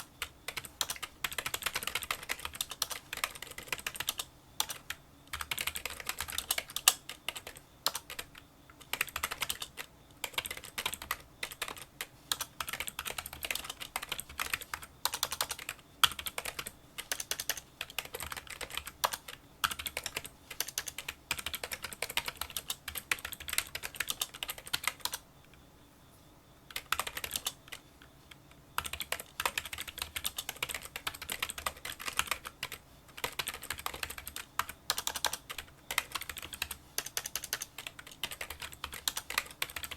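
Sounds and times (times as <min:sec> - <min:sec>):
typing on a keyboard: 0:00.0 - 0:25.2, 0:26.7 - 0:27.8, 0:28.8 - 0:39.9.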